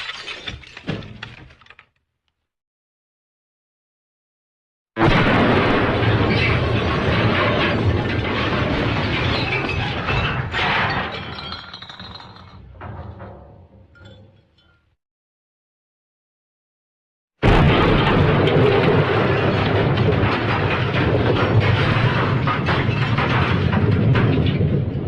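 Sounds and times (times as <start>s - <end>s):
glass smashing crash: 0.0s - 1.4s, 5.0s - 12.9s.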